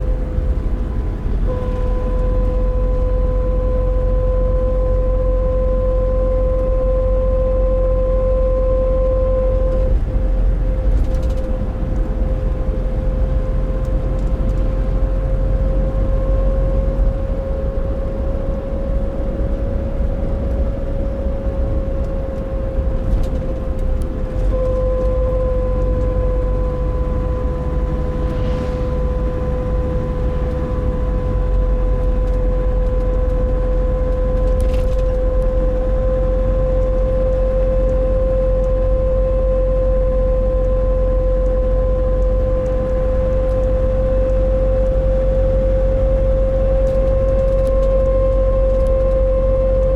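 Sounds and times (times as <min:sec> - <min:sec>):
engine and road rumble: 0:00.0 - 0:49.9
steady droning tone: 0:00.0 - 0:49.9.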